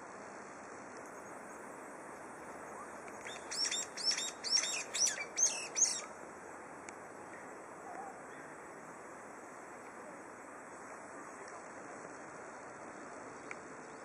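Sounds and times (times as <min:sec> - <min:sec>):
steady background hiss: 0:00.0 - 0:14.0
songbird singing high notes: 0:02.8 - 0:06.1.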